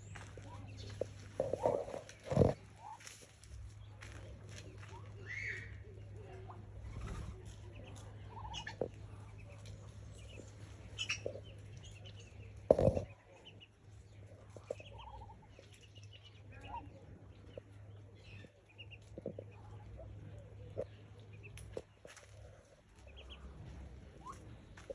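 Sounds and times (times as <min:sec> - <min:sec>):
ducklings peeping: 0:00.0 - 0:03.1, 0:04.1 - 0:06.8, 0:07.4 - 0:24.9.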